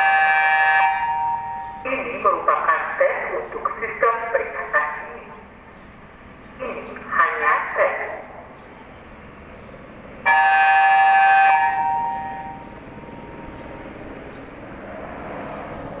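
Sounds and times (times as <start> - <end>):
horn chord: 10.3 - 13.7.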